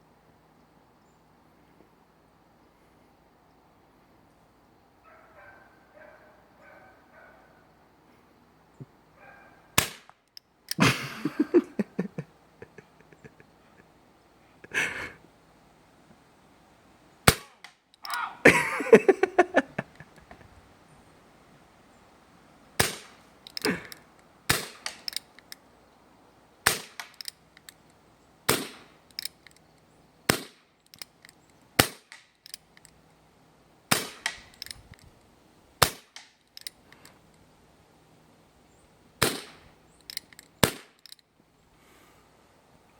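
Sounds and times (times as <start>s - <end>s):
bb gun shots: 9.8s - 10.1s, 17.3s - 17.6s, 22.8s - 23.2s, 39.2s - 39.6s, 40.6s - 41.0s
light clicks: 23.0s - 25.7s, 27.0s - 28.0s, 29.1s - 29.9s, 30.8s - 33.0s, 34.2s - 35.3s, 36.1s - 37.4s, 39.5s - 41.3s.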